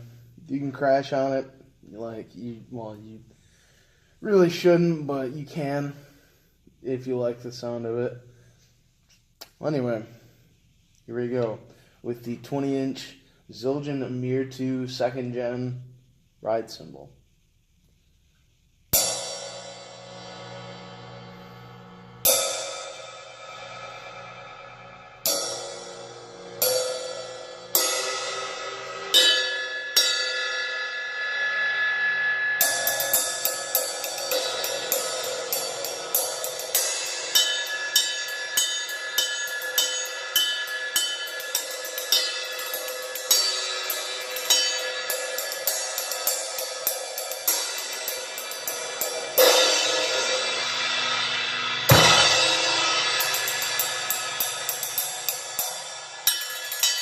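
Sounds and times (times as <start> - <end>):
ride cymbal strikes: 18.9 - 57.0.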